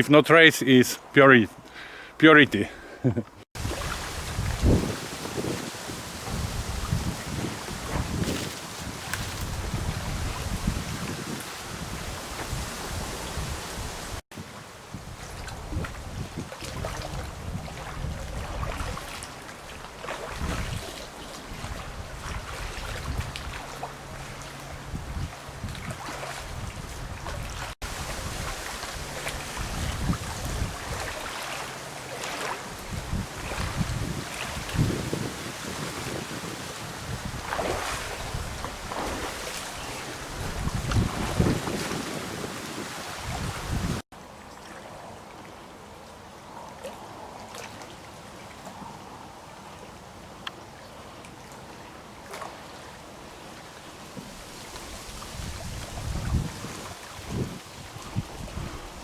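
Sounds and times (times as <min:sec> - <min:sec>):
wind buffeting microphone: 0:03.6 - 0:14.2, 0:14.9 - 0:31.4, 0:32.6 - 0:44.0, 0:54.2 - 0:59.0
trickling water: 0:03.6 - 0:46.1, 0:50.4 - 0:59.0.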